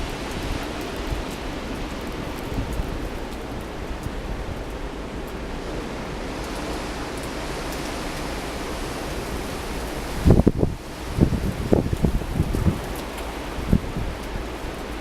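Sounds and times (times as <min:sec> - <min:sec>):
blizzard wind blowing: 0:00.0 - 0:15.0
wind rumble on microphone: 0:00.0 - 0:15.0.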